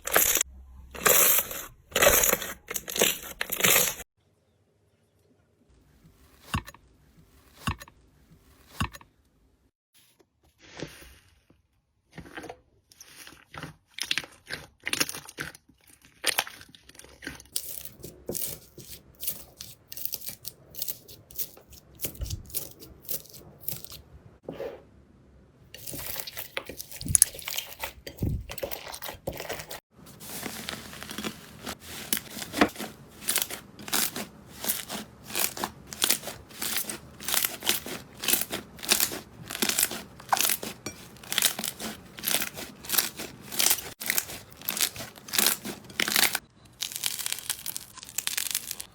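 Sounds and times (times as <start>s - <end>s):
slime crackling and popping: 30.2s - 48.9s.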